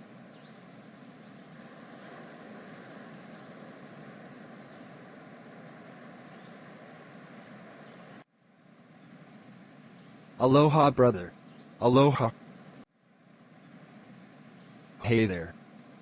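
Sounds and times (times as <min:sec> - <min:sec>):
beach ambience rushing: 0:00.0 - 0:08.2, 0:09.8 - 0:12.7, 0:15.0 - 0:15.5.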